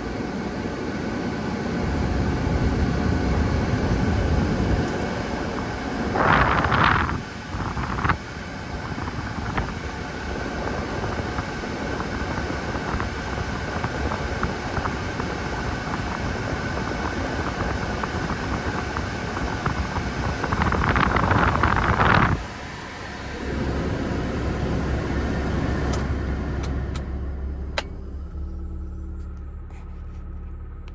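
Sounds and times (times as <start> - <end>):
air vent blowing air: 0.0 - 30.9
click: 25.9 - 27.1, 27.8 - 28.4.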